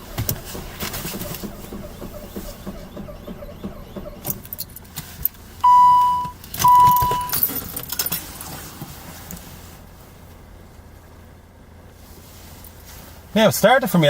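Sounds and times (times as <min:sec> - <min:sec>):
car keys jangling: 0:00.1 - 0:08.5
electronic warning chimes: 0:01.3 - 0:04.8, 0:05.6 - 0:07.5.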